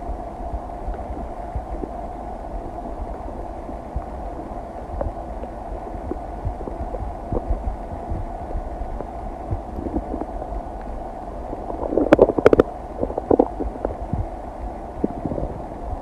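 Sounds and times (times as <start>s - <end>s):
stomach gurgling: 0.5s - 16.0s.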